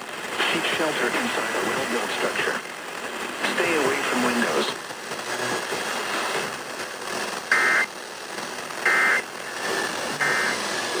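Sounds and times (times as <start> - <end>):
radio noise hiss: 0.0 - 11.0
short data tone bursts: 7.5 - 7.9, 8.8 - 9.3, 10.2 - 11.0.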